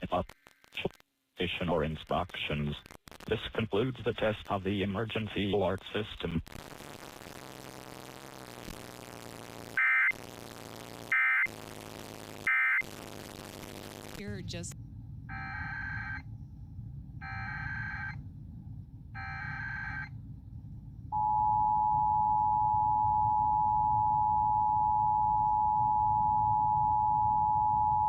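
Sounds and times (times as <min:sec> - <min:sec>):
data bursts: 0:17.2 - 0:18.2
two-tone attention signal: 0:17.2 - 0:18.2.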